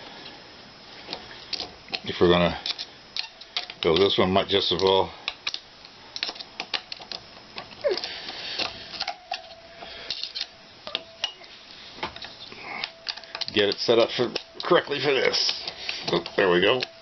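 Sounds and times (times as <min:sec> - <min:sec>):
metal parts and tools clicking: 0:01.5 - 0:11.5, 0:12.2 - 0:17.0.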